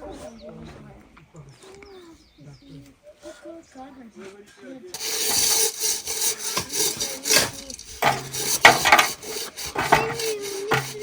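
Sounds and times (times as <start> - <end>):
rough scraping strokes: 5.0 - 11.0.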